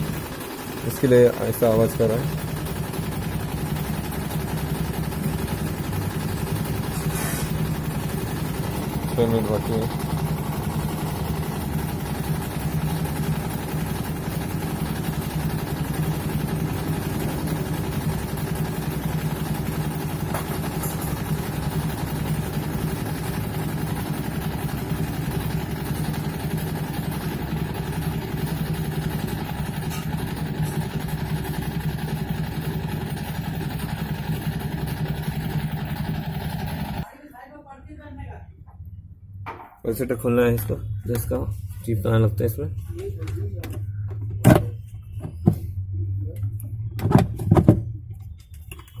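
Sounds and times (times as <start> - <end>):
washing machine humming: 0.0 - 37.2.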